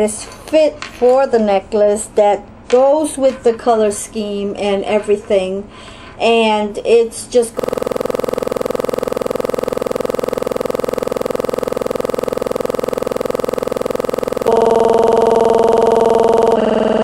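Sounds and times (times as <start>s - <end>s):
held synthesizer chords: 7.6s - 16.7s.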